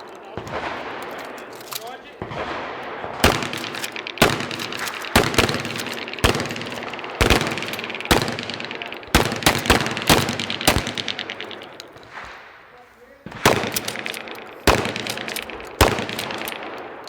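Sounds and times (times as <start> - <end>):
shotguns firing: 0.0 - 17.0.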